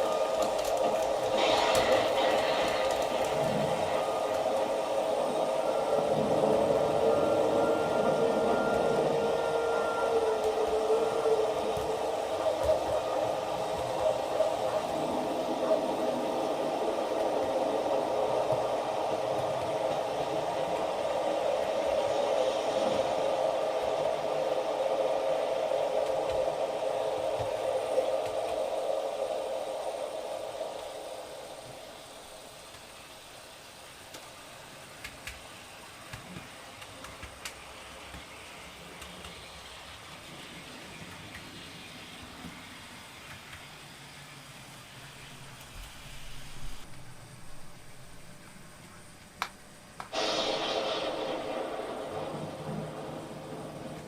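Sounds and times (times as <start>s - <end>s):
sharp crackles: 0.0s - 5.0s
steady hiss from small speaker: 0.0s - 54.0s
low rumble of thunder: 50.2s - 54.0s.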